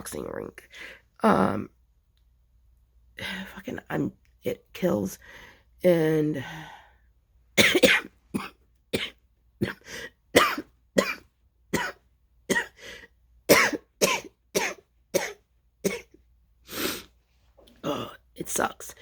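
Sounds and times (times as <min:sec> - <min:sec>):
woman coughing harshly: 0:07.6 - 0:11.2, 0:11.8 - 0:12.8, 0:13.5 - 0:16.1.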